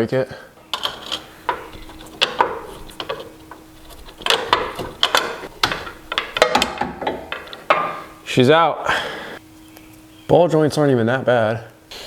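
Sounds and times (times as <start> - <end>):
metallic clicks and knocks: 0.7 - 8.2.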